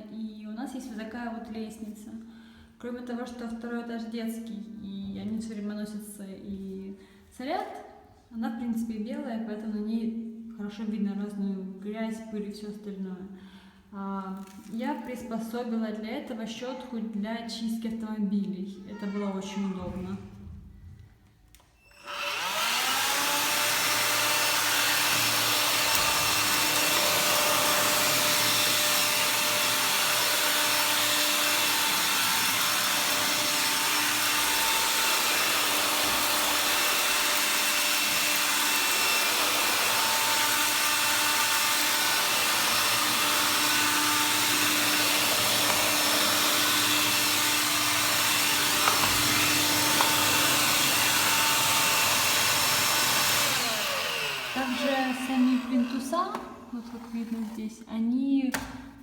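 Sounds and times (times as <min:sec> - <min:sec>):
stick vacuum motor whine: 0:21.8 - 0:57.5.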